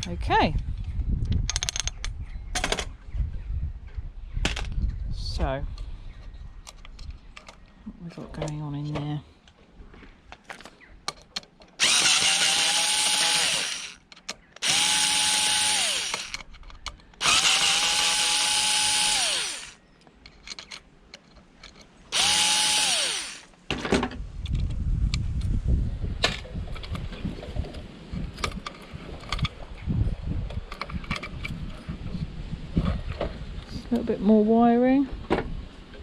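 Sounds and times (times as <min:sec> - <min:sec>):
drill-driver motor whining: 0:11.8 - 0:14.0, 0:14.6 - 0:16.5, 0:17.2 - 0:19.8, 0:22.1 - 0:23.5.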